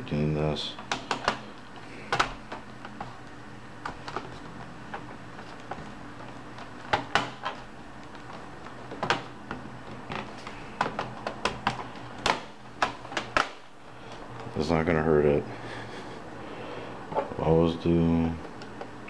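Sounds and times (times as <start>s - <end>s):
laptop parts clicking: 0.8s - 14.5s.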